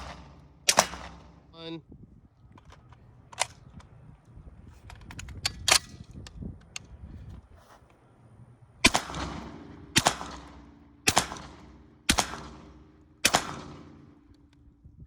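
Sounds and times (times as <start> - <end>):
shotgun shots with echo: 0.0 - 1.5, 8.8 - 14.1.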